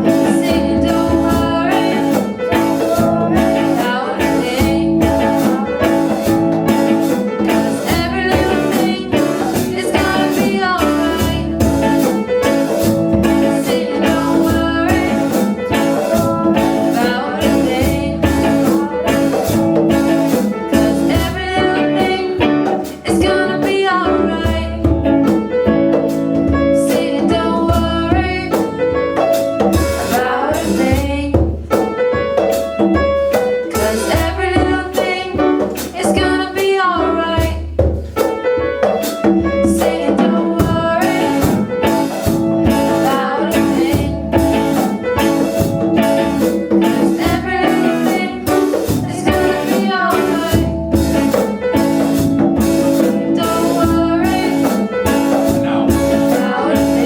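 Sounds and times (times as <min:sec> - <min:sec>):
person singing: 0:00.0 - 0:25.6, 0:26.6 - 0:31.6, 0:33.6 - 0:37.8, 0:39.4 - 0:57.0
reggae band playing: 0:00.0 - 0:57.0.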